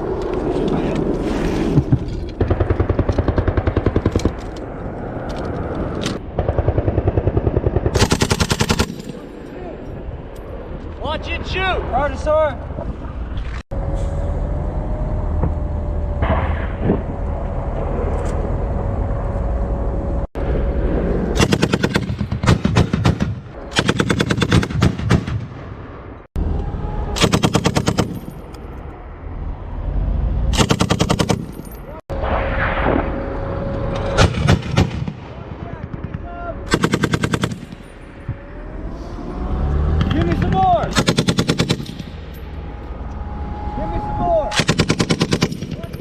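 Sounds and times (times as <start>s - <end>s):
machine gun firing bursts: 2.4s - 4.2s, 6.4s - 9.0s, 30.6s - 31.4s, 35.9s - 37.6s, 40.9s - 41.9s, 44.6s - 45.8s
steady whine: 32.1s - 36.6s.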